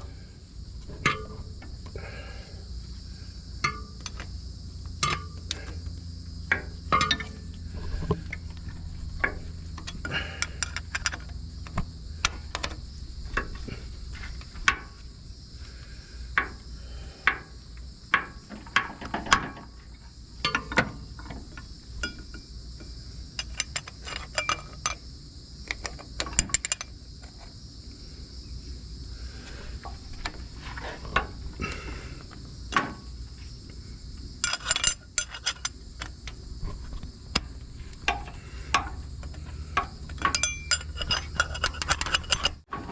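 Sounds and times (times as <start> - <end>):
low hum: 0.0 - 17.3
hand tools clinking on metal: 34.4 - 36.1, 38.1 - 42.7.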